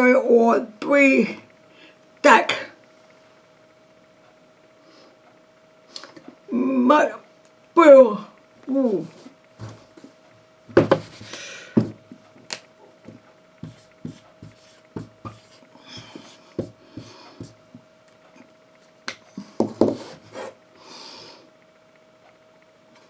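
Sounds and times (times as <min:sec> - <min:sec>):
faint steady hum: 0:00.0 - 0:23.0
breathing: 0:01.7 - 0:02.0, 0:11.2 - 0:11.8, 0:15.8 - 0:17.5, 0:20.8 - 0:21.5.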